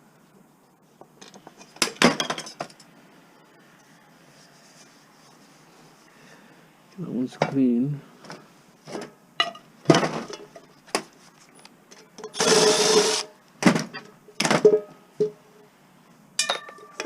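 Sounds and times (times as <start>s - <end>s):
metallic rattling scrape: 12.2s - 13.3s.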